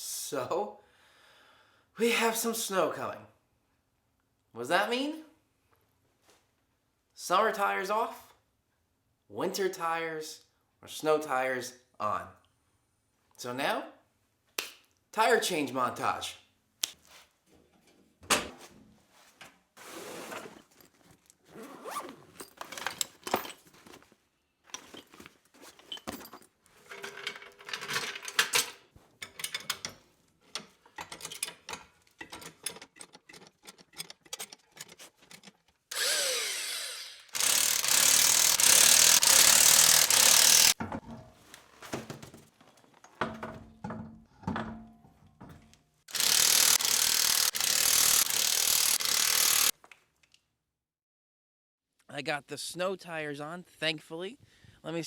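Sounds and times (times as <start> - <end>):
tool clicks and knocks: 27.1 - 35.8
power tool running: 35.9 - 40.8, 46.1 - 49.7.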